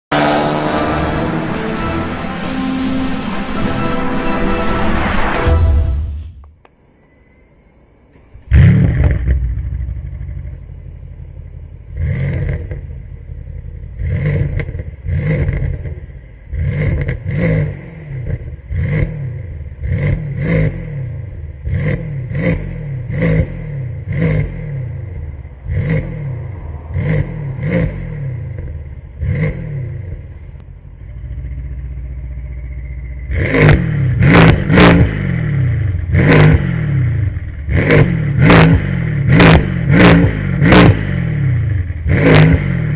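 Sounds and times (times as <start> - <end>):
car engine revving: 0.0 - 6.5, 8.2 - 42.9
car engine starting: 0.0 - 42.9.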